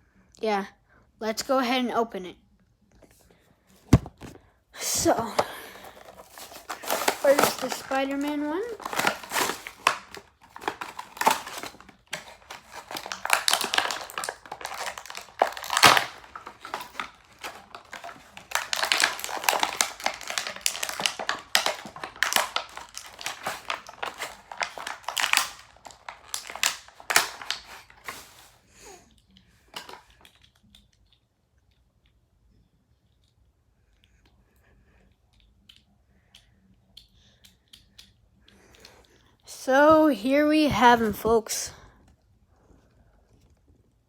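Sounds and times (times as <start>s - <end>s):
packaging rustling: 3.8s - 4.4s, 5.0s - 28.7s, 29.8s - 30.2s.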